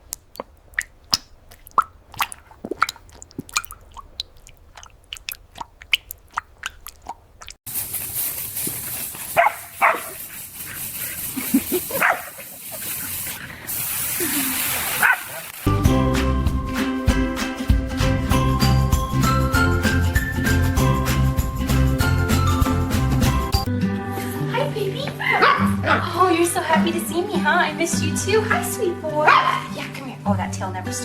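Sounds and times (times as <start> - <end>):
steady hiss: 7.7 - 15.7.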